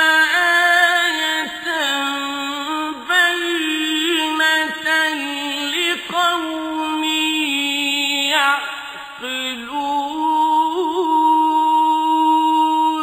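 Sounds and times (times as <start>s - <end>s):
man chanting melodically: 0.0s - 13.0s.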